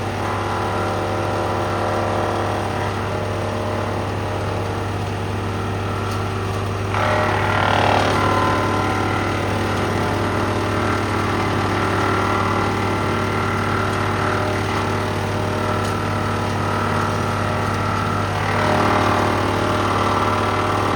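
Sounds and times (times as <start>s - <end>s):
tractor engine running: 0.0s - 20.9s
wood chipper running: 0.0s - 20.9s.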